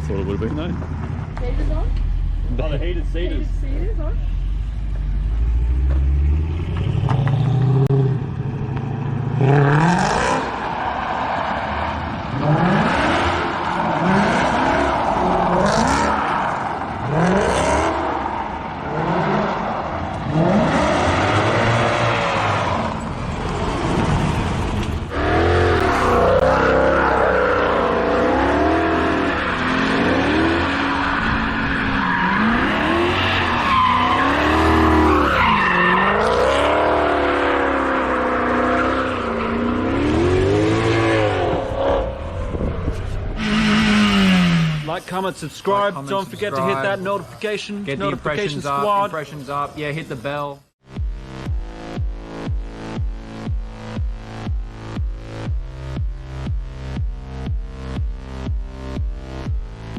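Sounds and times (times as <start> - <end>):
car engine revving hard: 9.3 - 10.6, 12.3 - 16.2, 17.0 - 18.3, 18.9 - 23.0, 25.1 - 42.4, 43.4 - 44.9
tyres squealing and scrubbing: 28.9 - 36.5.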